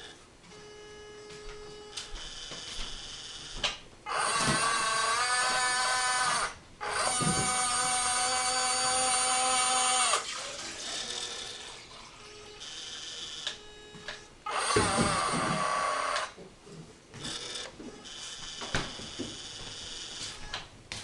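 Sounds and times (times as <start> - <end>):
small electric motor whining: 4.1 - 16.4.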